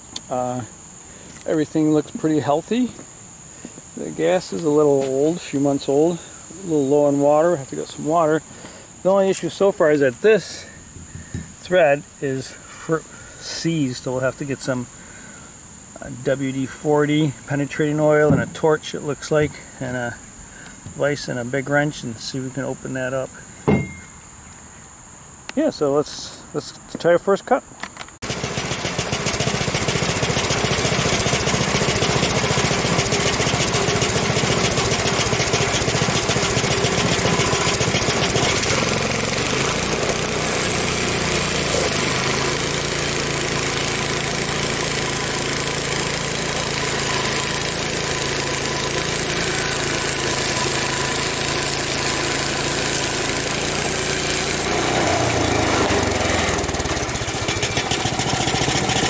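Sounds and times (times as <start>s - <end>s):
band blade cutting log: 28.2s - 59.0s
sawmill gasoline engine running: 28.2s - 59.0s.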